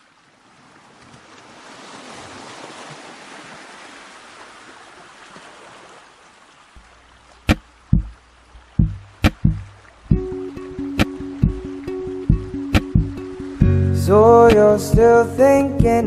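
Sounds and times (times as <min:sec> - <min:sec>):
sharp drum hits: 0:07.5 - 0:08.1, 0:08.8 - 0:11.7, 0:12.3 - 0:13.8
low bass note: 0:08.8 - 0:15.1.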